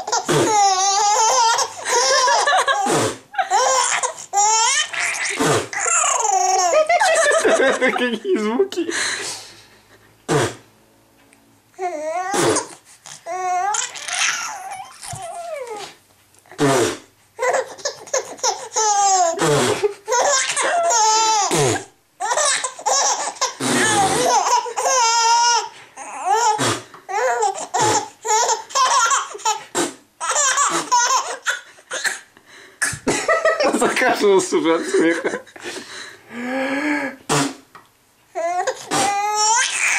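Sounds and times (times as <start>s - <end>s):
baby laughing: 0.0s - 8.8s, 11.8s - 15.9s, 17.4s - 34.1s, 38.4s - 39.9s
adults mock sneezing: 37.1s - 37.6s.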